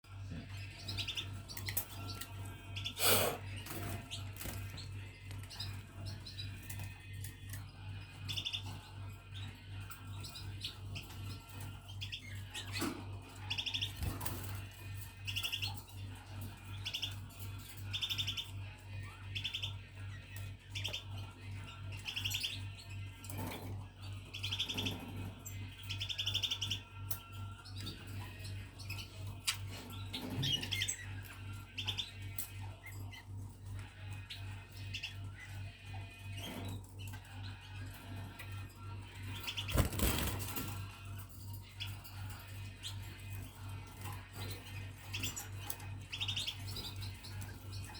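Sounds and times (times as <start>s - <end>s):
budgerigars chirping: 45.0s - 47.9s.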